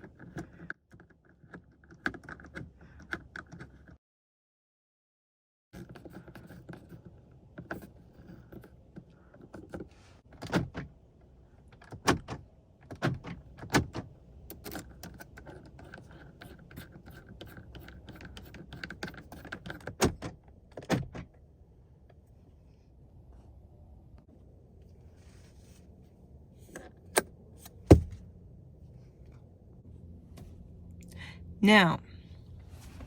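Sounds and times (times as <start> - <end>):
door lock knob clicks and knocks: 11.8 - 21.3.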